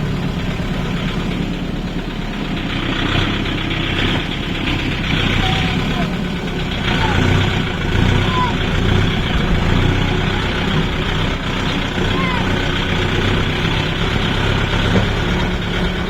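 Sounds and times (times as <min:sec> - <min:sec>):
diesel machinery engine running: 0:00.0 - 0:16.0
background voices: 0:04.8 - 0:16.0.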